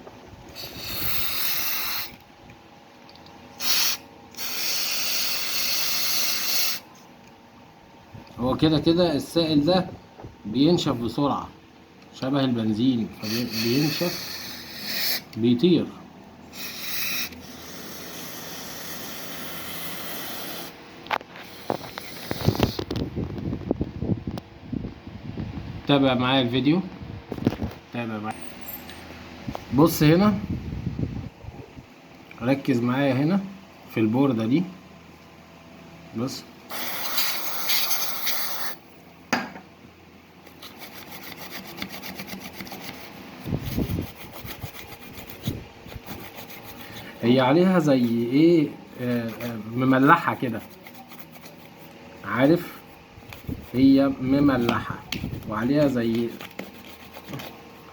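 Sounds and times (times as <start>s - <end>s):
aerosol can spraying: 0.6s - 2.2s, 3.6s - 6.8s, 16.6s - 20.7s, 36.7s - 38.8s
toothbrush scrubbing circuit board: 13.2s - 15.2s, 40.5s - 54.7s, 55.8s - 57.9s.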